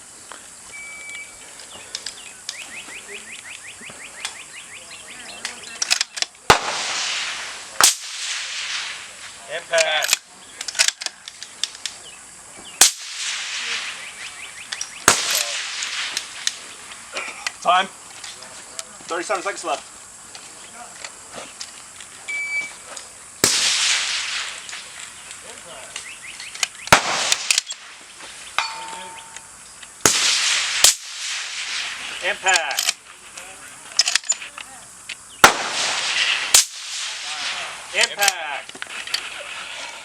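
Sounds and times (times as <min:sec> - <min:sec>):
suppressed rifle shots: 0:06.0 - 0:09.2, 0:12.8 - 0:16.6, 0:23.4 - 0:24.9, 0:26.8 - 0:27.9, 0:28.6 - 0:32.8, 0:35.4 - 0:38.3
quiet crack: 0:24.6 - 0:30.0
short metallic ring: 0:28.6 - 0:29.5.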